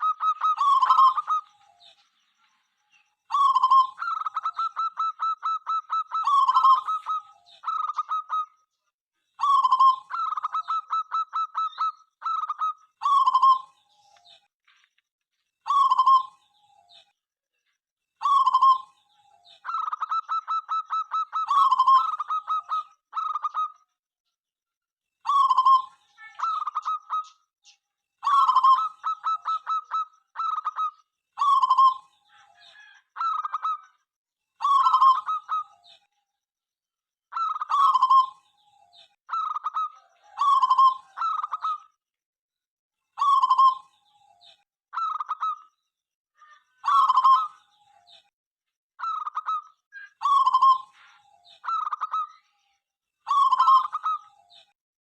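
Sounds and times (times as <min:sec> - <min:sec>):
dove cooing: 0:00.0 - 0:01.8, 0:03.3 - 0:08.5, 0:18.2 - 0:23.7, 0:28.2 - 0:33.9, 0:34.6 - 0:36.0, 0:37.4 - 0:38.4, 0:39.3 - 0:41.8, 0:43.2 - 0:43.9, 0:46.8 - 0:47.5.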